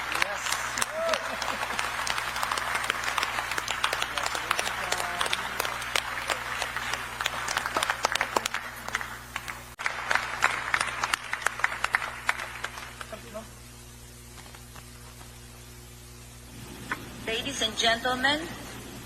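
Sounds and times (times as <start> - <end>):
audience applauding: 0.0 - 13.5.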